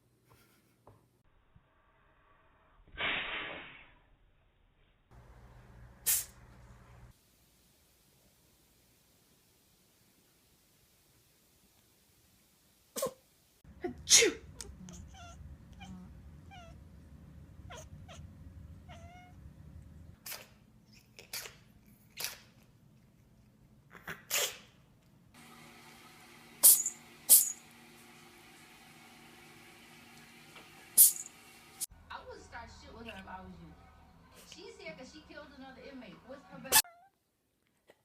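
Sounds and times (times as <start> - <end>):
cats sneezing: 6.1 - 6.4, 14.0 - 15.9, 20.2 - 22.6, 23.9 - 24.8.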